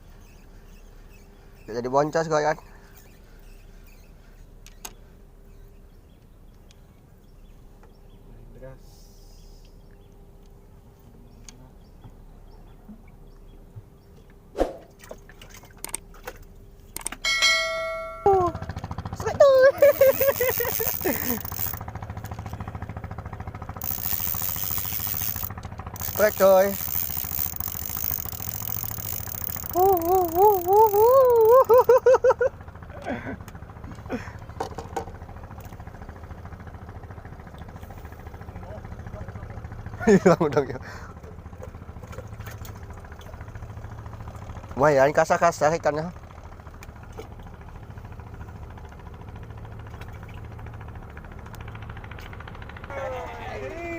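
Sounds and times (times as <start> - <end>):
water lapping and dripping: 14.8 - 17.0, 41.2 - 44.8, 46.5 - 52.5
boat engine idling: 15.8 - 53.9.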